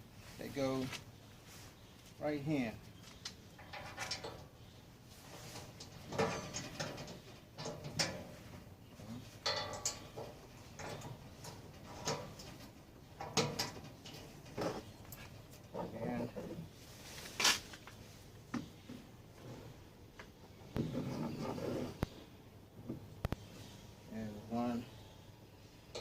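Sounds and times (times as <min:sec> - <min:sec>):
short metal knocks ringing: 0:09.4 - 0:11.1.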